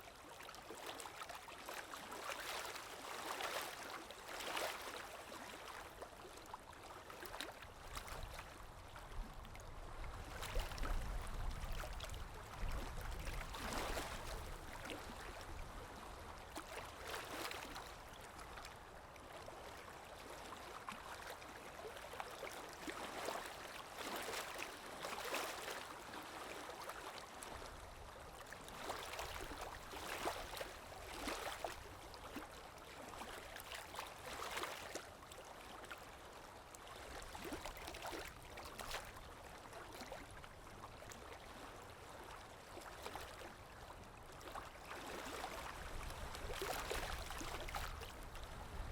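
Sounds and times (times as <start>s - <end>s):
small water splashes: 0.0s - 48.9s
sea waves lapping: 9.8s - 18.6s, 41.0s - 48.9s.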